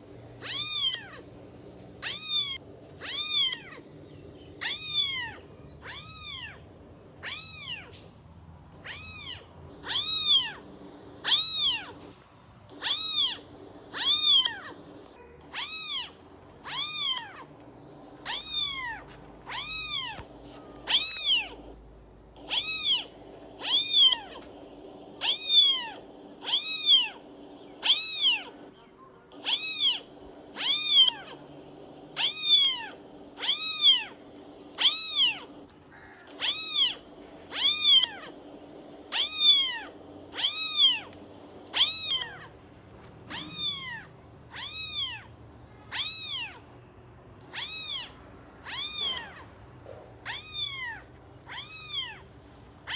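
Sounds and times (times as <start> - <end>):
kitten meowing: 0.4 - 1.3, 2.0 - 3.8, 4.6 - 6.6, 7.2 - 8.0, 8.8 - 10.6, 11.2 - 12.0, 12.8 - 17.5, 18.2 - 21.7, 22.5 - 24.4, 25.2 - 27.2, 27.8 - 28.6, 29.4 - 31.4, 32.2 - 34.2, 34.8 - 38.4, 39.1 - 42.5, 43.2 - 46.6, 47.5 - 49.5, 50.2 - 52.9.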